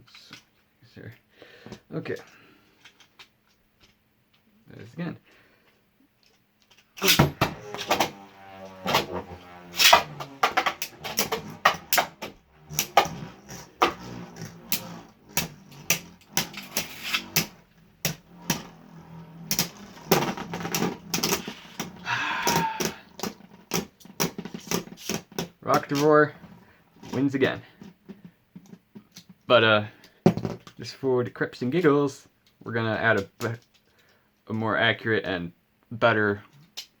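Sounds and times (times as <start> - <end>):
spinning tops clashing: 7.0 - 18.7.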